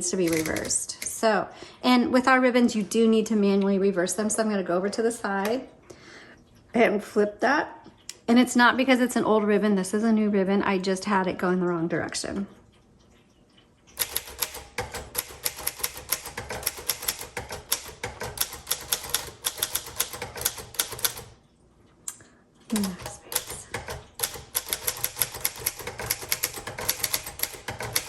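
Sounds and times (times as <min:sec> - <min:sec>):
manual typewriter keystrokes: 0:00.0 - 0:01.2, 0:14.0 - 0:21.4, 0:22.7 - 0:28.0.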